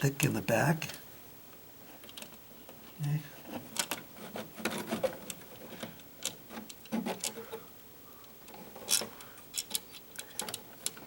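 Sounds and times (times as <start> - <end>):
electrical wires clicking and scraping: 3.4 - 7.5.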